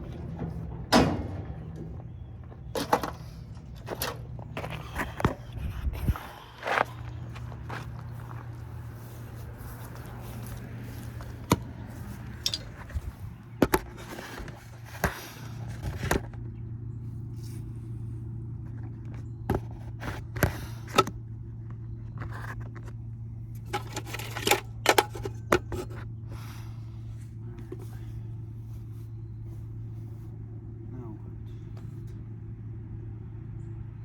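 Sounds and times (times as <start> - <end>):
metal clinks and scrapes: 12.4 - 13.1.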